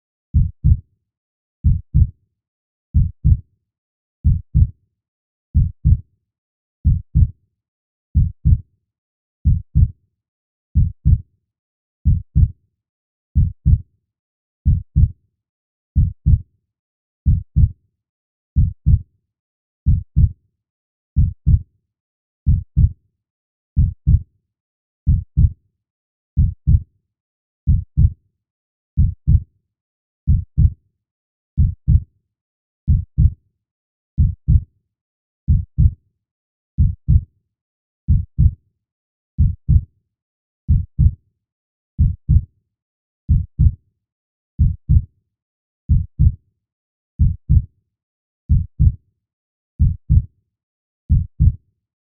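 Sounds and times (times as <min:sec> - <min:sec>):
slow heartbeat: 0:01.6 - 0:02.1, 0:03.0 - 0:03.4, 0:05.6 - 0:06.0, 0:06.9 - 0:07.3, 0:09.5 - 0:09.9, 0:12.1 - 0:12.5, 0:14.7 - 0:15.1, 0:17.3 - 0:17.7, 0:18.6 - 0:19.0, 0:19.9 - 0:20.3, 0:22.5 - 0:22.9, 0:26.4 - 0:26.8, 0:27.7 - 0:28.1, 0:29.0 - 0:29.4, 0:30.3 - 0:30.8, 0:31.6 - 0:32.0, 0:34.2 - 0:34.6, 0:35.5 - 0:36.0, 0:36.8 - 0:37.2, 0:38.1 - 0:38.6, 0:39.4 - 0:39.8, 0:40.7 - 0:41.2, 0:42.0 - 0:42.4, 0:43.3 - 0:43.8, 0:44.6 - 0:45.0, 0:45.9 - 0:46.4, 0:47.2 - 0:47.6, 0:48.5 - 0:48.9, 0:49.8 - 0:50.3, 0:51.1 - 0:51.6.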